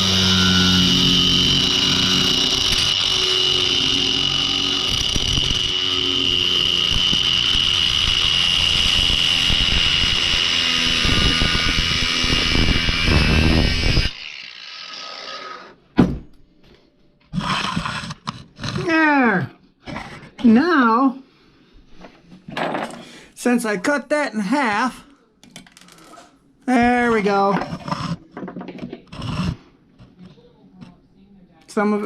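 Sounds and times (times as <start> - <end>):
power tool whining while cutting bolt: 0.0 - 15.8.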